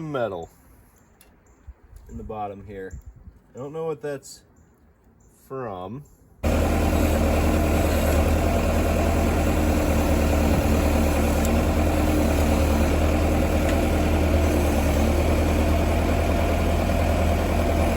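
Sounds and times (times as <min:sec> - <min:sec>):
bulldozer diesel engine idling: 0:06.4 - 0:17.9.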